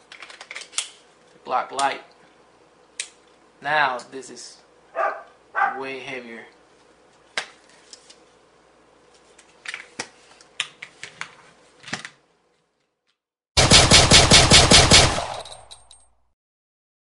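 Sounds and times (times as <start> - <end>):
rapid gunshot burst: 13.6 - 15.6.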